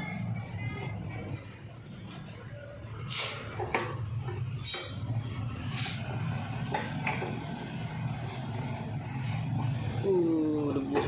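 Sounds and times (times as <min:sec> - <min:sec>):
metal tools clinking: 0:04.5 - 0:05.1.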